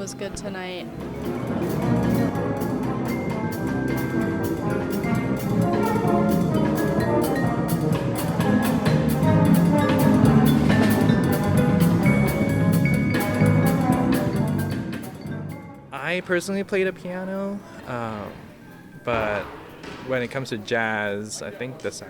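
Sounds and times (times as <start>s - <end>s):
drums striking: 0.0s - 15.2s, 17.8s - 20.7s
jazz band playing: 0.0s - 20.7s.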